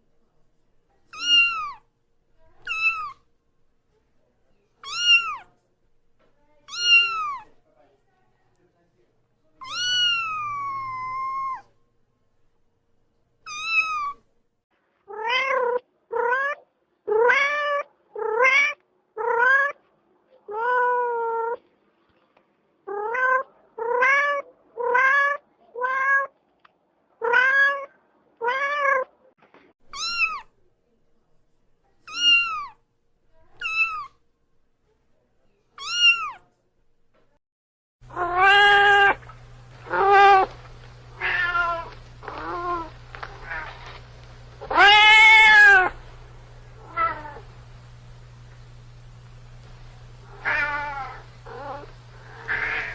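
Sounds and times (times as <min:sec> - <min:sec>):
cat meowing: 0:01.1 - 0:01.8, 0:02.6 - 0:03.2, 0:04.8 - 0:05.5, 0:06.7 - 0:07.5, 0:09.6 - 0:11.7, 0:13.5 - 0:14.2, 0:15.1 - 0:19.8, 0:22.9 - 0:26.3, 0:27.2 - 0:29.1, 0:29.9 - 0:30.5, 0:32.0 - 0:32.8, 0:33.6 - 0:34.2, 0:35.8 - 0:36.4, 0:38.1 - 0:40.6, 0:41.2 - 0:44.0, 0:44.6 - 0:46.0, 0:46.8 - 0:47.5, 0:50.3 - 0:52.9
low hum: 0:45.8 - 0:52.6.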